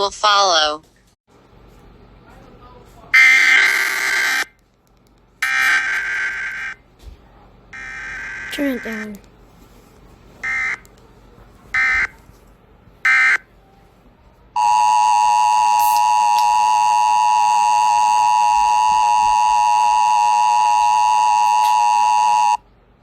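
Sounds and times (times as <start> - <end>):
two-tone alarm tone: 14.6 - 22.6.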